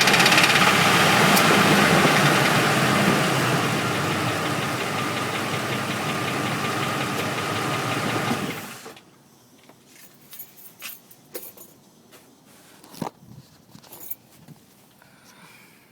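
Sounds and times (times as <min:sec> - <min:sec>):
engine running with rhythmic knock: 0:00.0 - 0:09.0.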